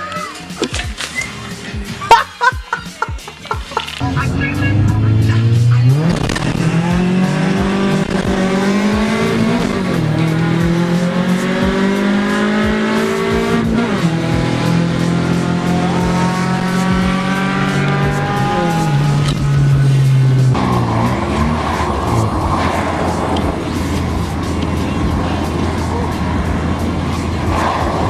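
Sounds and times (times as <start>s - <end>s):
car engine revving through gears: 4.0s - 28.0s.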